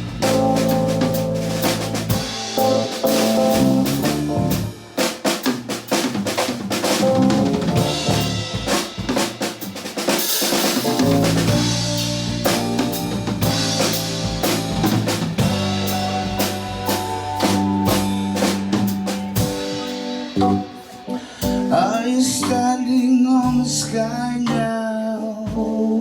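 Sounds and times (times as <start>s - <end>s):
quick snare and bass drum hits: 0.0s - 20.7s
live rock band playing: 0.0s - 24.9s.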